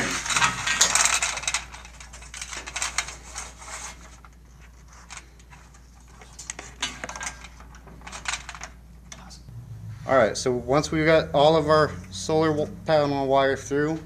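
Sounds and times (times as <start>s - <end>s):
wire scraping and rustling: 0.0s - 9.3s
steady low hum: 0.0s - 14.0s.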